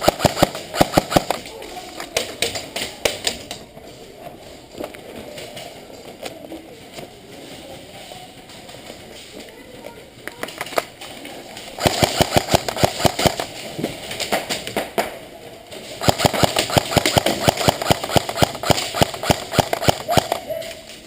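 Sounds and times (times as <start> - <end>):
airsoft guns firing full auto: 0.0 - 1.4, 11.8 - 13.5, 16.0 - 20.5.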